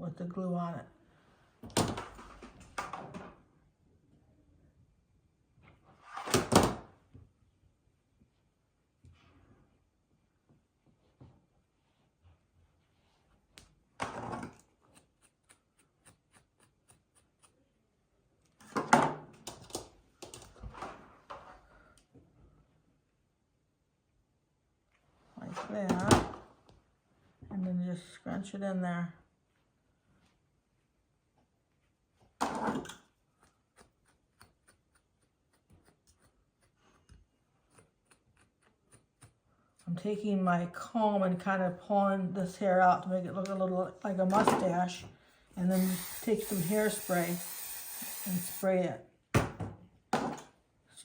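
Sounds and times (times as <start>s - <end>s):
comb scratching through fur: 33.4s - 40.0s.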